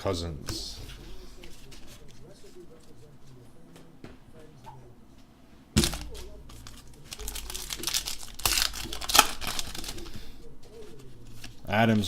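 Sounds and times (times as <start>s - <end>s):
foil wrapper tearing: 5.8s - 10.3s
foil wrapper crinkling: 5.8s - 12.0s.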